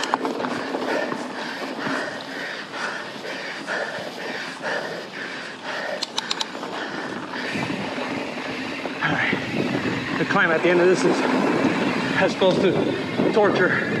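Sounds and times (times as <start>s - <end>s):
heavy rapid breathing: 0.0s - 14.0s
tyres rolling on dirt: 0.0s - 14.0s
sharp clicks: 5.8s - 6.6s.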